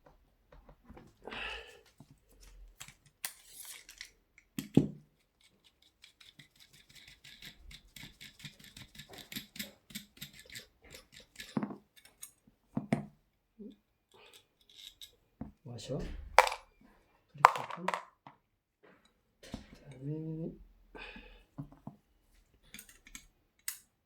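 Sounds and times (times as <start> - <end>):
metal wrench clicking and scraping: 2.8 - 12.4, 14.2 - 15.2, 22.7 - 23.9.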